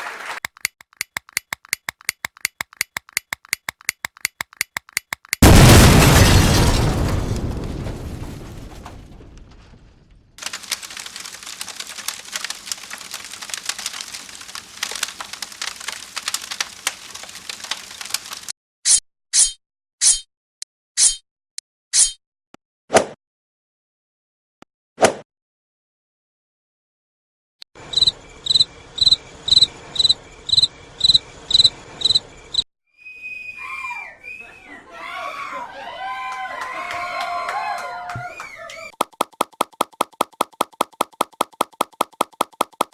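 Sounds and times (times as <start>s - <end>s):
dense irregular crackling: 5.3s - 18.5s
explosion boom: 5.4s - 10.4s.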